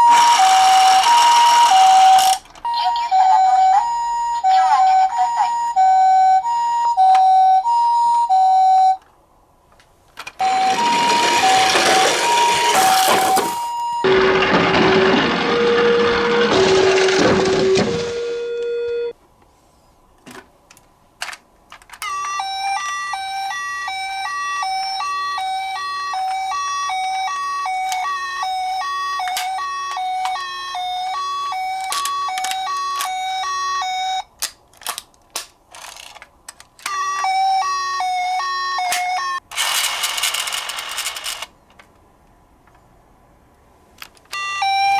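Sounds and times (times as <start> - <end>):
toy ambulance two-tone siren: 0.0 - 9.0, 10.4 - 19.1, 22.0 - 34.3, 36.8 - 41.5, 44.3 - 44.9
plastic toy being handled: 34.4 - 37.3, 38.9 - 42.0.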